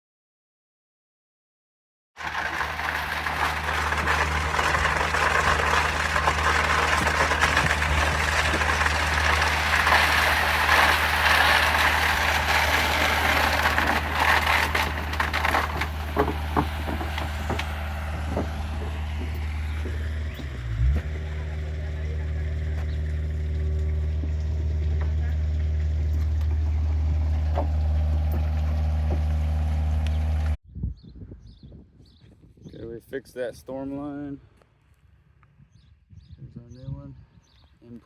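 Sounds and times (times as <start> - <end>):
diesel engine running: 2.2 - 30.6
rattling and crunching: 2.2 - 30.6.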